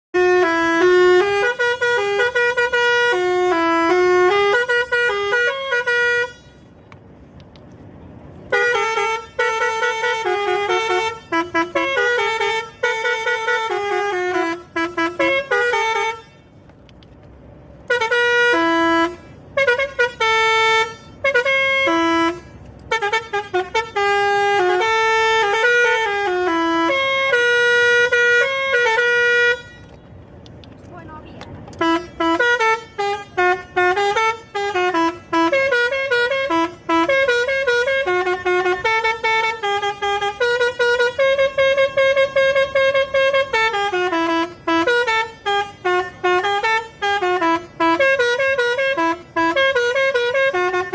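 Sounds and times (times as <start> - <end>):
musical air horn tune: 0.2 - 6.7, 8.5 - 16.6, 17.9 - 29.9, 31.8 - 50.9.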